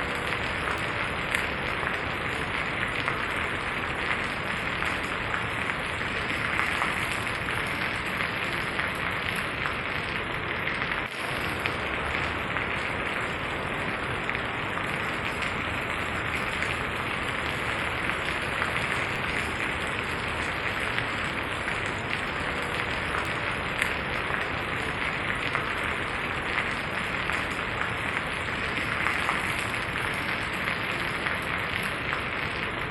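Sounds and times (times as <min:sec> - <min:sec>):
steady rain on ground: 0:00.0 - 0:32.9.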